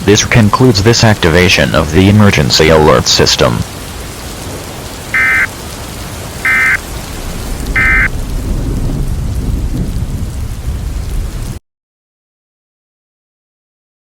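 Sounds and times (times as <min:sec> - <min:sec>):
rain: 0:00.0 - 0:11.6
rolling thunder: 0:03.6 - 0:11.6
warbling two-tone data bursts: 0:05.2 - 0:05.5, 0:06.4 - 0:06.8, 0:07.8 - 0:08.1.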